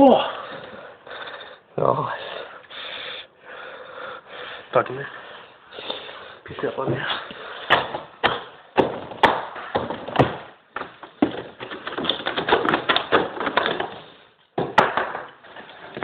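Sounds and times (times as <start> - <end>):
door being kicked: 7.7 - 13.9.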